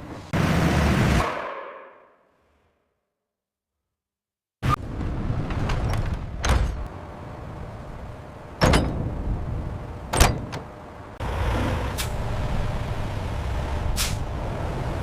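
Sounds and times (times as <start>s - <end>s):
sharp clanks and knocks: 8.6s - 9.2s, 10.1s - 10.7s.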